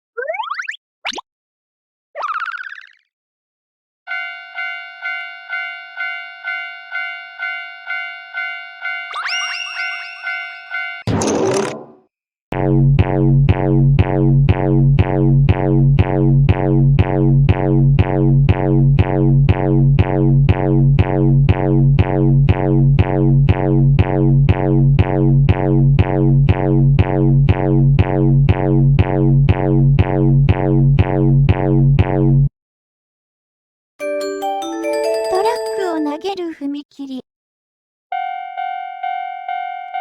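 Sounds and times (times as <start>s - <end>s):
railroad crossing bell ringing: 4.1s - 11.1s, 34.0s - 36.3s, 38.2s - 40.0s.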